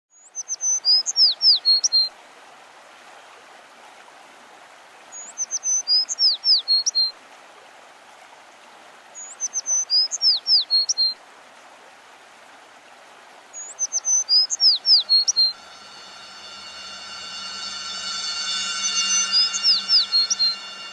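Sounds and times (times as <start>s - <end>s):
outdoor background hiss: 11.2s - 20.9s
songbird singing: 13.6s - 20.9s.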